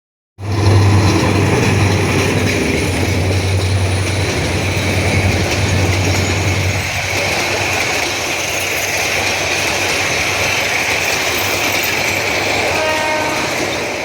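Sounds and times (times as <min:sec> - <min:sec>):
low drone: 0:00.4 - 0:07.8
train rumbling: 0:00.4 - 0:14.0.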